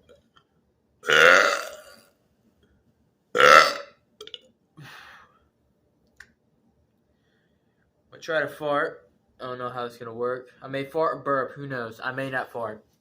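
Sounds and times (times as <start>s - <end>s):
man burping loudly: 1.0s - 2.0s, 3.4s - 4.4s.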